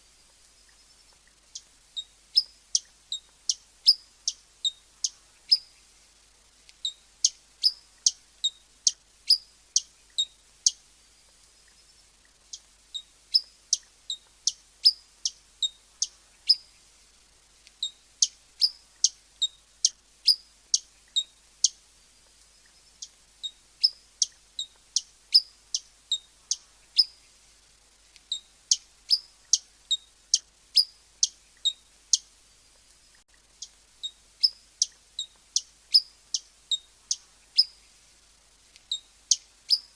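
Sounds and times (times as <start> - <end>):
hummingbird chip calls: 0.5 - 5.8, 6.8 - 10.8, 11.6 - 16.8, 17.8 - 21.8, 22.6 - 27.3, 28.3 - 32.4, 33.1 - 37.9, 38.8 - 39.9.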